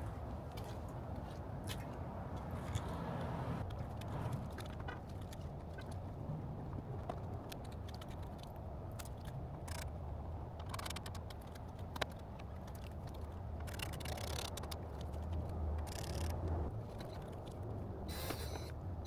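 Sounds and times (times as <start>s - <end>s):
clicks and scrapes of car parts: 1.6s - 6.0s, 10.6s - 18.8s.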